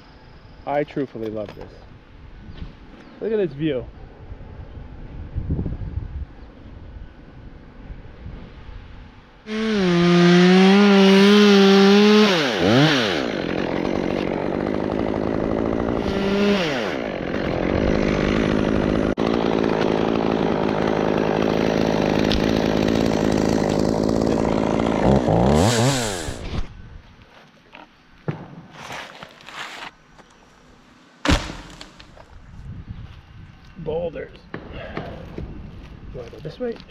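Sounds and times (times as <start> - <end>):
chainsaw revving: 9.5 - 26.4.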